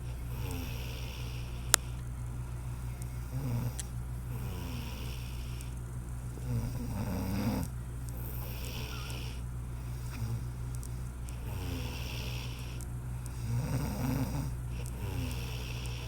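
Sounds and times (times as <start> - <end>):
woman snoring: 0.0 - 2.0, 2.7 - 10.6, 11.3 - 16.0
quiet breathing: 0.0 - 16.0.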